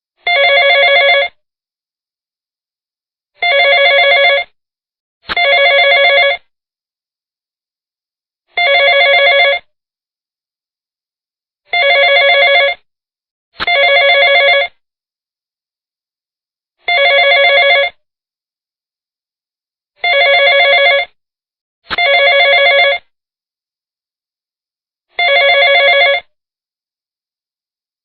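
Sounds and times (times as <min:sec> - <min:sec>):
telephone ringing with trill: 0:00.2 - 0:01.4, 0:03.4 - 0:04.5, 0:05.4 - 0:06.4, 0:08.6 - 0:09.7, 0:11.7 - 0:12.8, 0:13.6 - 0:14.7, 0:16.9 - 0:18.0, 0:20.0 - 0:21.1, 0:21.9 - 0:23.1, 0:25.2 - 0:26.3.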